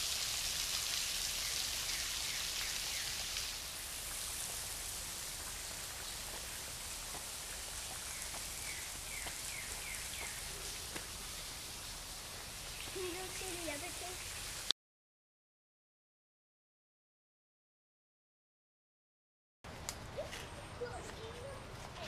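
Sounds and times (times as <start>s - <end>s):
waterfall splashing: 0.0s - 14.7s.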